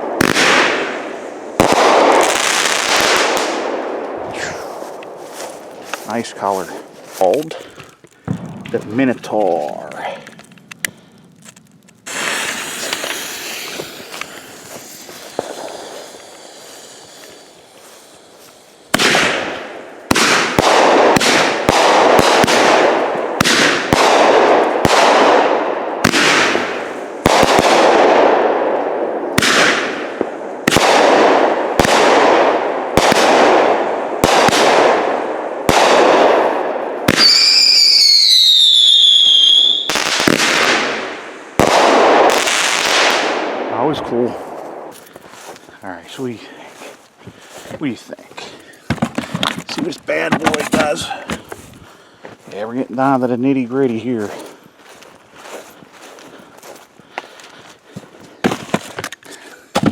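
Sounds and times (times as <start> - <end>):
firework shots: 0.0 - 7.5, 8.2 - 9.2, 12.0 - 45.0
firework fuse hissing: 4.2 - 6.4, 10.8 - 20.6
falling firework whistle: 12.1 - 17.7, 37.1 - 40.0.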